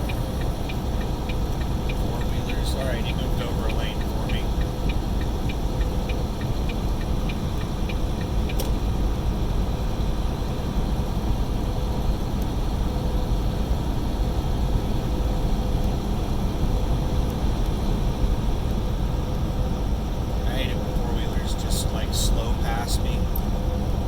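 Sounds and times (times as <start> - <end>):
turn signal ticking: 0.0 - 8.9
faint steady hum: 0.0 - 24.0
road noise: 0.0 - 24.0
truck engine drone: 0.0 - 24.0.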